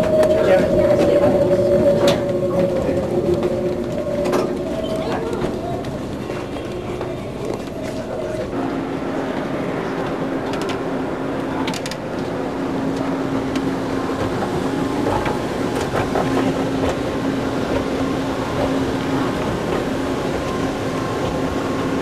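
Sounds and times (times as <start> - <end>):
elevator mechanical hum: 0.0 - 22.0.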